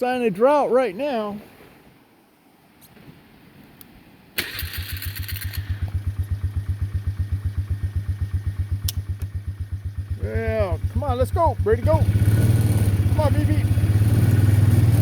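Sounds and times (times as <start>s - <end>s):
vehicle engine starting and idling: 4.4s - 15.0s.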